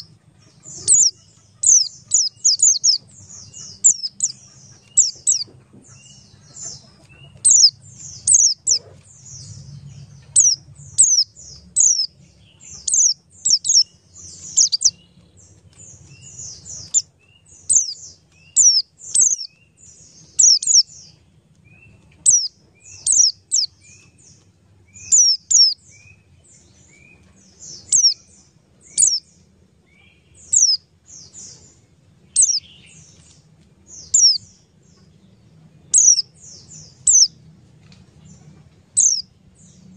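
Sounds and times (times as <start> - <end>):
softer lower chirps: 0.0 - 29.5, 30.1 - 33.3, 34.0 - 35.1, 35.9 - 37.4, 38.3 - 39.9
bird chirping sharp high notes: 10.2 - 15.0.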